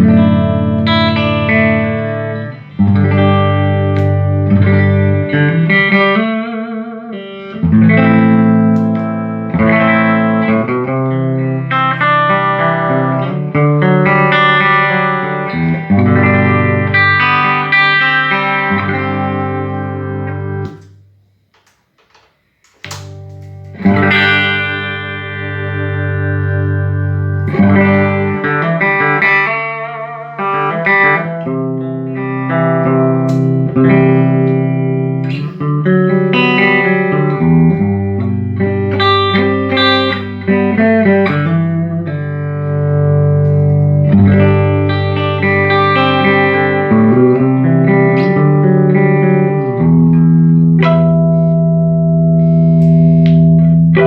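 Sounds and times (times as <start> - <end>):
electric guitar chords and notes: 0.0 - 54.0.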